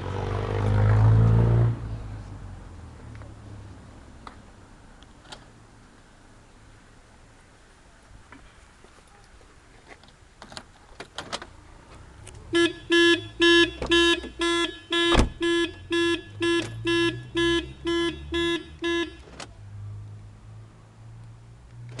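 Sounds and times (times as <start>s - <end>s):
car alarm beeping: 12.5s - 19.4s.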